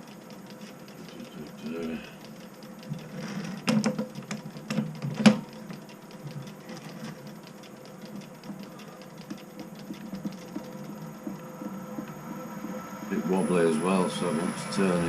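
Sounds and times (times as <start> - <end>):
metal lathe running: 9.9 - 15.0.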